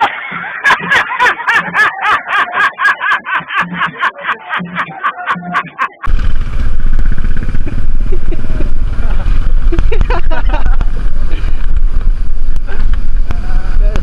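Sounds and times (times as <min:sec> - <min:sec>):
wind rumble on microphone: 0:06.1 - 0:14.0.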